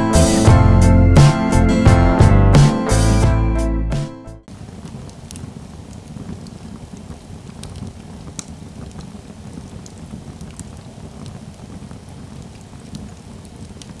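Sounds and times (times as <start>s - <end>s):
fire crackling and popping: 4.5s - 14.0s.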